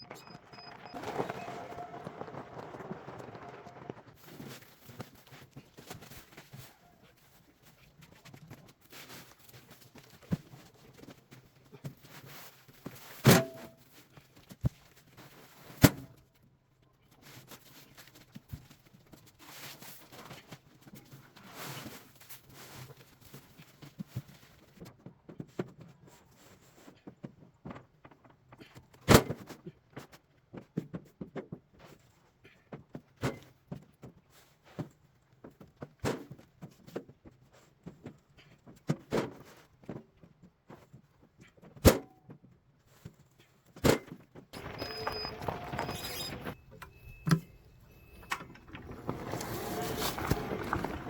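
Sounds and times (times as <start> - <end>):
dense steady clatter: 44.6 - 51.0.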